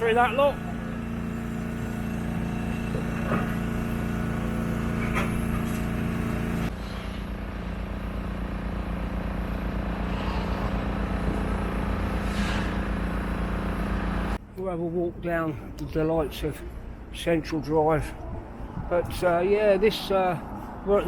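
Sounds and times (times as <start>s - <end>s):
diesel engine running: 0.0s - 14.4s.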